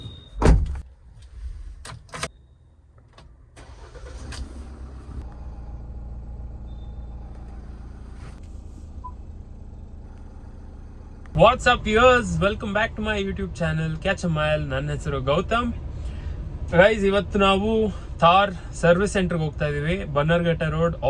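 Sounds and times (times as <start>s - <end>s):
loud thump: 0.4s - 0.8s
car engine starting and idling: 0.8s - 21.0s.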